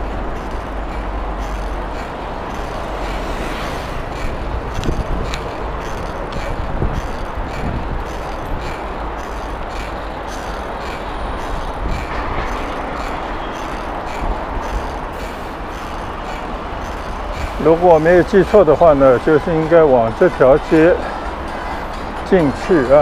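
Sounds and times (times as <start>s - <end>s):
faint regular ticking: 0.0s - 23.0s
street traffic: 0.0s - 23.0s
wind rumbling on microphone: 3.9s - 17.6s.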